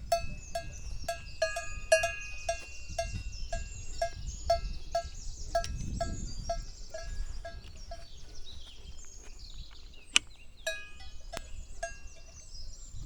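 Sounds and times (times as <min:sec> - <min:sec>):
cowbell clanking: 0:00.0 - 0:08.4, 0:10.7 - 0:12.7
small birds chirping: 0:00.0 - 0:13.0.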